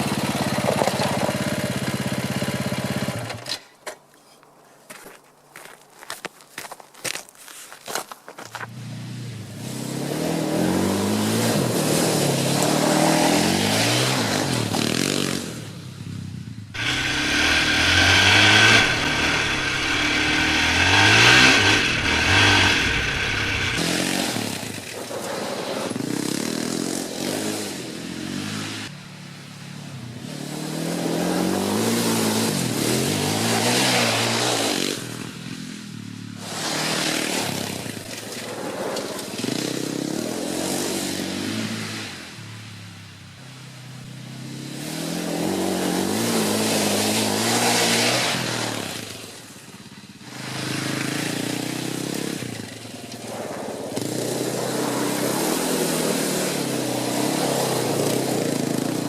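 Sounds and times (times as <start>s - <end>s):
atv engine revving: 0.0s - 3.5s, 8.8s - 28.9s, 29.9s - 43.1s, 44.3s - 59.0s.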